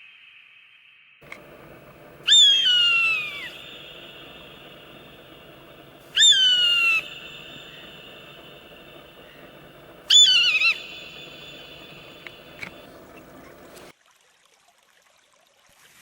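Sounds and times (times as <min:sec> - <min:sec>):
faint click: 0:01.2 - 0:02.1
bird of prey screaming: 0:01.2 - 0:13.9.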